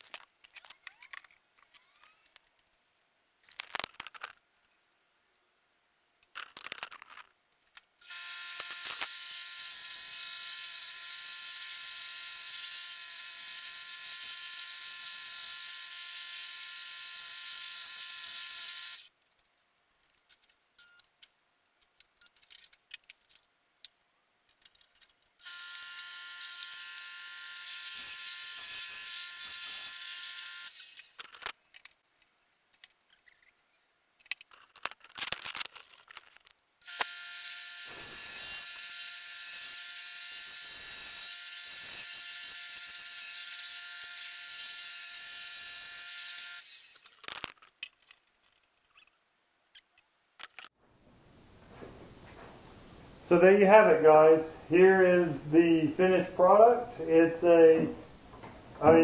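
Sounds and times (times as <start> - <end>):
power tool motor running: 8.0 - 19.1, 25.4 - 31.1, 36.8 - 44.8.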